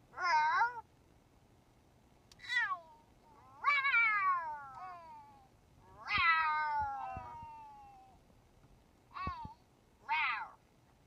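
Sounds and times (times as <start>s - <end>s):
cat meowing: 2.4s - 8.2s, 9.1s - 10.6s.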